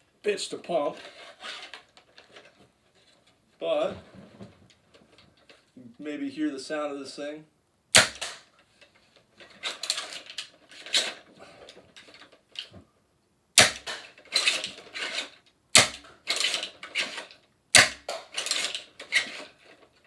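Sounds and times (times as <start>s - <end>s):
toy blaster firing cracks: 7.9s - 8.5s, 13.6s - 14.7s, 15.7s - 19.3s.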